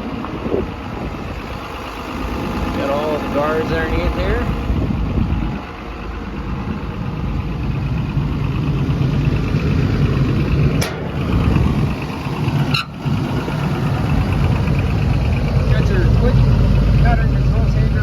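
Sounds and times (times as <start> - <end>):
excavator diesel engine idling: 0.0 - 18.0.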